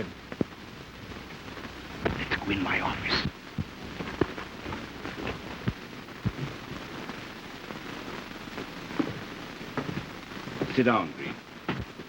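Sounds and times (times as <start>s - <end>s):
film soundtrack hiss and crackle: 0.0s - 12.0s
sharp pops and clicks: 3.2s - 6.9s.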